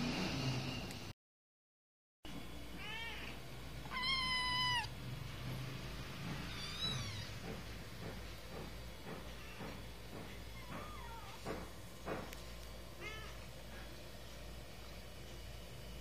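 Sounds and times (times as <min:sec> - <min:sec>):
kitten meowing: 0:02.8 - 0:05.0, 0:06.5 - 0:07.3.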